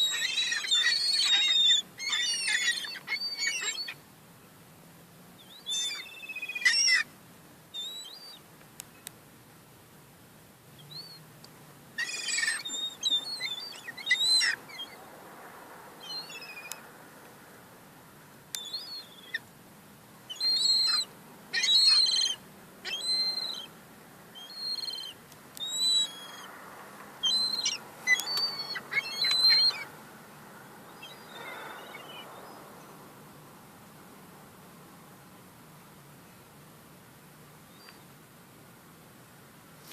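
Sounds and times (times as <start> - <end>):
young gulls calling: 0.0 - 4.0, 5.4 - 7.1, 7.8 - 8.4, 12.0 - 15.0, 16.0 - 16.8, 18.6 - 19.5, 20.3 - 26.6, 27.2 - 30.0, 30.6 - 33.1.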